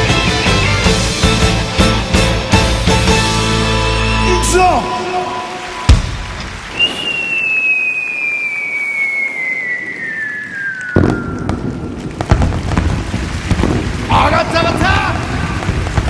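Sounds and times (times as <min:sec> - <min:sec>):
firework whistle falling: 0:04.4 - 0:12.0
firework bang: 0:05.9 - 0:14.2
crackling and pops: 0:05.9 - 0:16.0.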